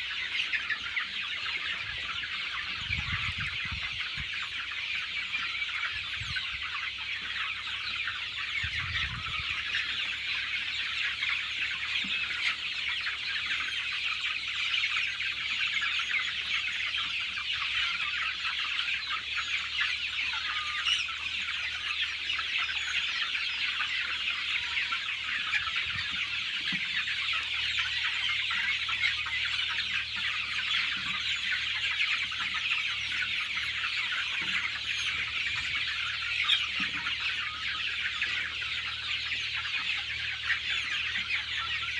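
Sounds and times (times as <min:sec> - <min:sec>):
flock of chickens clucking: 0:00.0 - 0:41.9.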